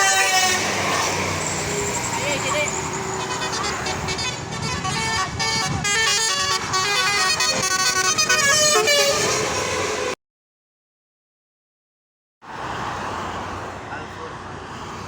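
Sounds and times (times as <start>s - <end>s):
bus musical horn playing a tune: 0.0s - 1.8s, 2.6s - 10.2s
low traffic rumble: 0.0s - 10.2s, 12.4s - 15.0s.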